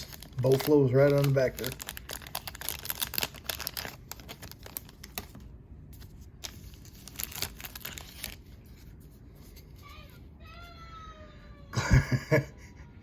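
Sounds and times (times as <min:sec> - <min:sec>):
card pack wrapper crinkling: 0:00.0 - 0:09.9
cards being handled: 0:00.0 - 0:10.2.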